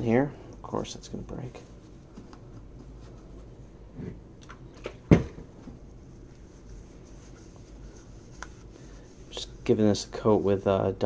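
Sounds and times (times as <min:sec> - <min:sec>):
hard object knocking on bench: 0:05.1 - 0:05.5.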